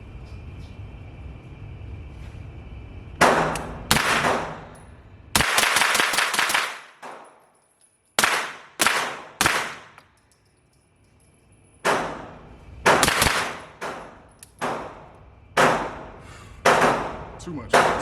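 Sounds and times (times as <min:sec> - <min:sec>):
suppressed rifle shots: 0:03.2 - 0:04.7, 0:08.2 - 0:10.0, 0:11.9 - 0:15.0.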